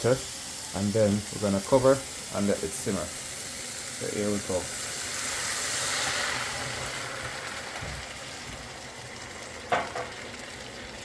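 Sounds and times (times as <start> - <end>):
mushrooms sizzling in a frying pan: 0.0 - 11.0.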